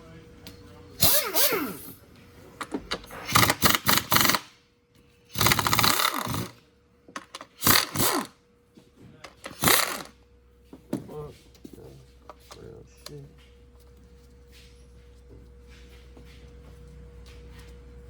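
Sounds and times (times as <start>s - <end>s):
power tool driving fasteners: 1.0s - 2.0s, 2.6s - 4.5s, 5.3s - 6.6s, 7.2s - 8.3s, 9.3s - 10.1s.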